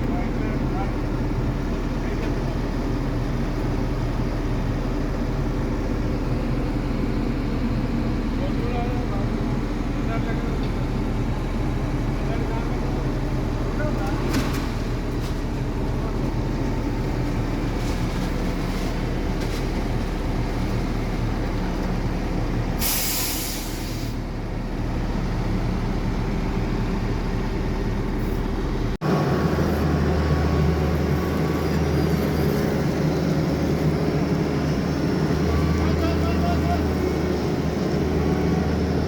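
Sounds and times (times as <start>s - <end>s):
diesel machinery engines running: 0.0s - 39.0s
hiss: 22.8s - 24.2s.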